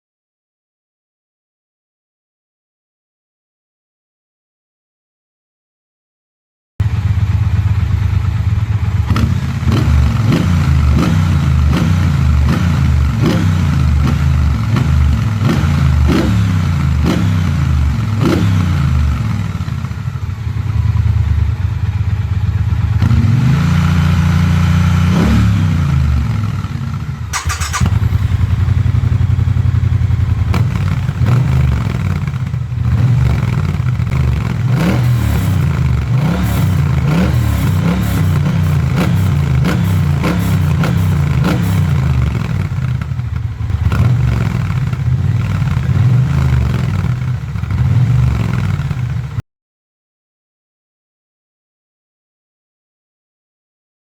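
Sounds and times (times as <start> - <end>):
motorcycle exhaust revving: 27.4 - 49.4.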